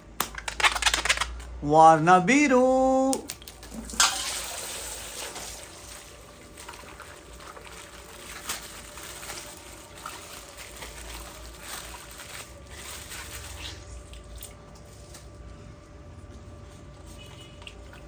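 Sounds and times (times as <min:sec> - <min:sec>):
plastic crinkling and clicking: 0:00.2 - 0:01.6, 0:06.5 - 0:13.5
water trickling and sloshing: 0:03.4 - 0:15.0, 0:16.4 - 0:18.0.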